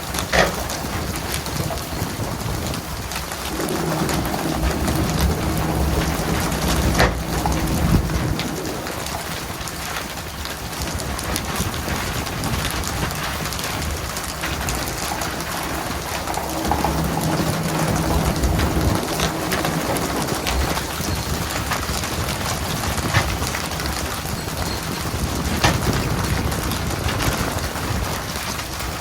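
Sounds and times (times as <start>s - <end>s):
water pattering on a surface: 0.0s - 29.0s
low engine hum: 3.3s - 10.0s, 14.2s - 26.8s.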